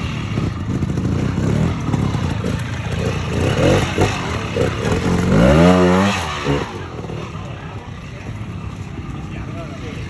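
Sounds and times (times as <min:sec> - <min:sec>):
motorcycle engine revving: 0:00.0 - 0:10.0.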